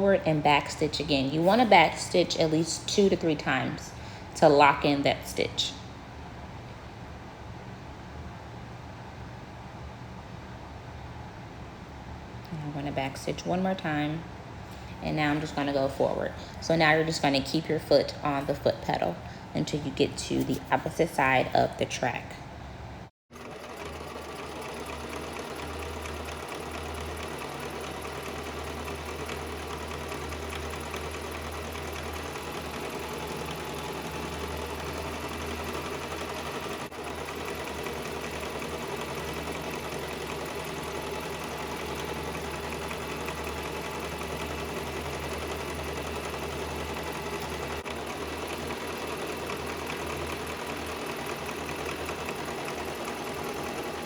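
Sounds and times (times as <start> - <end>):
sewing machine running: 23.3 - 54.0.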